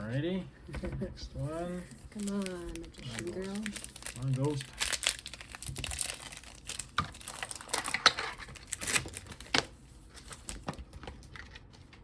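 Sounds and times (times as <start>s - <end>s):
foil wrapper crinkling and tearing: 2.1s - 11.8s.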